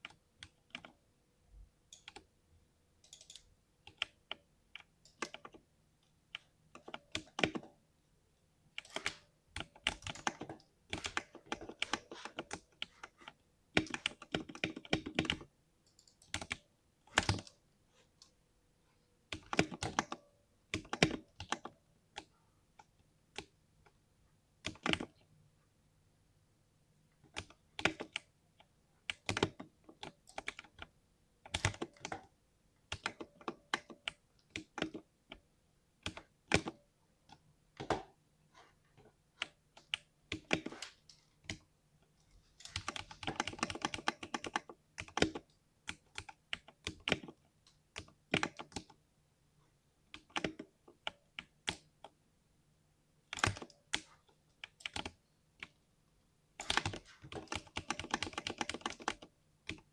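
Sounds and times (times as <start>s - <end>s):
typing on mechanical keyboard: 0.0s - 1.0s, 1.9s - 2.3s, 3.0s - 5.7s, 6.3s - 7.8s, 8.8s - 17.6s, 19.3s - 22.3s, 24.6s - 25.2s, 27.3s - 28.3s, 29.0s - 35.1s, 36.0s - 38.2s, 39.4s - 49.0s, 50.1s - 52.2s, 53.3s - 55.8s, 56.6s - 59.9s.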